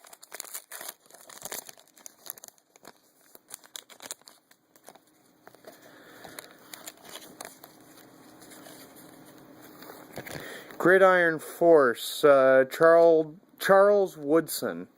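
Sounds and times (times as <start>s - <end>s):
cards clicking and rustling: 0.0s - 10.8s.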